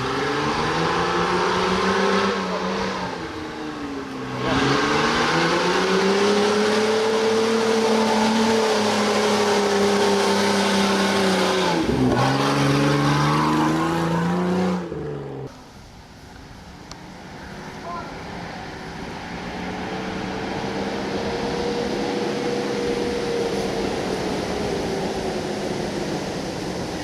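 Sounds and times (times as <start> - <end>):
off-road engine revving hard: 0.0 - 15.5.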